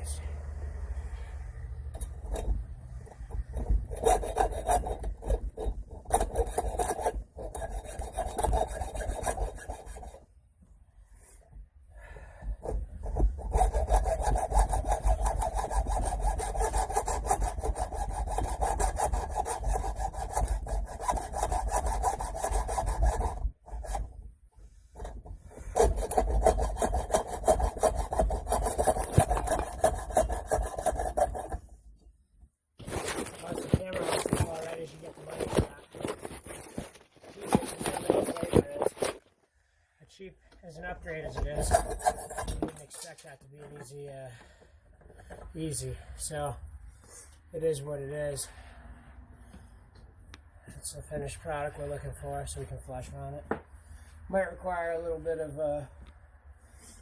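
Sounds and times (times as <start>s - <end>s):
blade rasping through metal: 2.0s - 10.2s, 12.6s - 24.2s, 25.0s - 31.7s, 41.3s - 43.3s.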